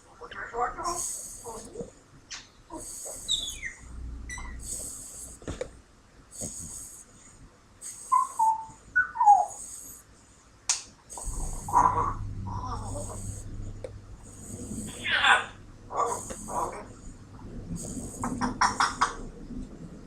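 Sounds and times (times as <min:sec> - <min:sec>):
pet snoring wheeze: 0:00.8 - 0:01.9, 0:02.7 - 0:10.2, 0:11.1 - 0:19.3
short squeaky whistles: 0:03.2 - 0:04.6, 0:07.8 - 0:09.6.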